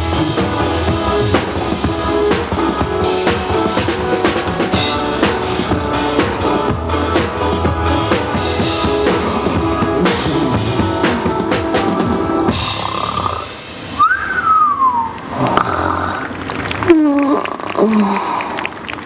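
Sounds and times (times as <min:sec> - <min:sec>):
backing track music: 0:00.0 - 0:14.0
drum kit playing: 0:00.0 - 0:14.2
whistle-like tone: 0:14.0 - 0:15.2.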